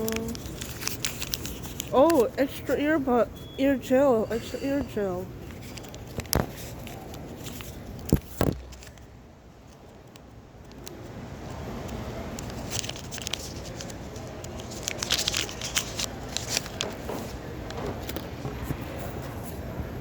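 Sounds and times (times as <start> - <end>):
plastic packaging clicks: 0.0 - 2.3, 5.4 - 9.1, 11.9 - 18.3
plastic packaging crackling: 0.0 - 2.8, 5.4 - 9.1, 12.4 - 18.3.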